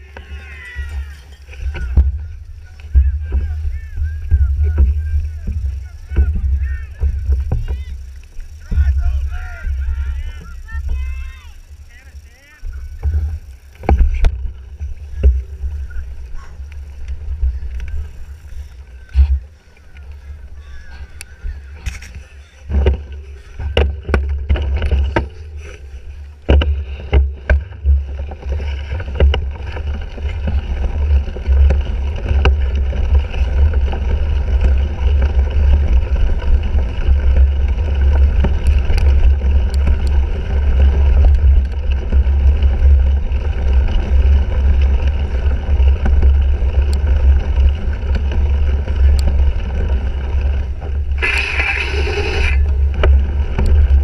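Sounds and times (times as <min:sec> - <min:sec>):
bike rattles and knocks: 0:00.0 - 0:54.0
wind rumble on camera: 0:12.7 - 0:54.0
burst of noise: 0:51.2 - 0:52.7.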